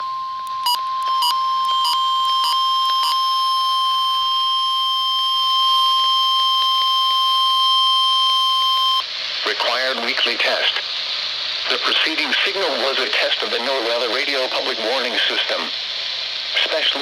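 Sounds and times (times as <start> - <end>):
steady alarm tone: 0.0 - 9.1
short beeps: 0.6 - 9.0.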